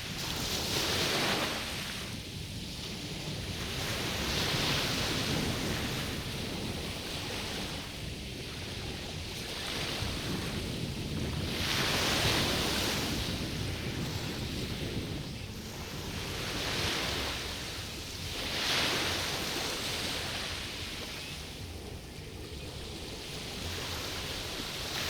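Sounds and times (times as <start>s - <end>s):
low rumble of wind: 0.0s - 25.0s
small waves washing onto beach: 0.0s - 25.0s.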